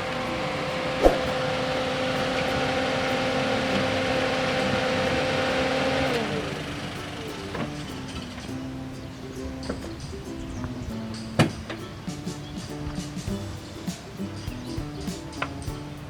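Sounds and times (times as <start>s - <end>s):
car engine revving: 0.0s - 11.7s.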